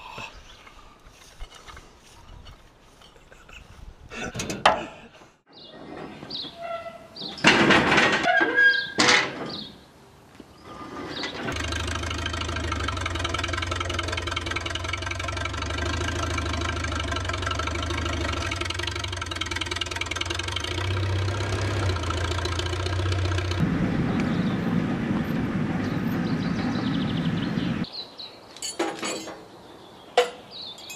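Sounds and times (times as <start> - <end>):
tractor engine running: 11.3 - 27.9.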